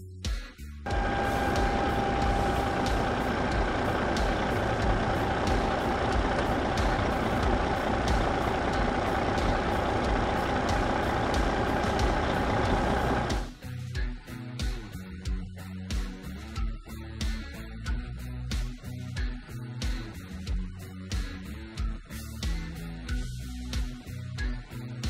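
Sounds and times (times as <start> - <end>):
faint high whine: 0.9 - 8.7
truck engine rumble: 0.9 - 13.5.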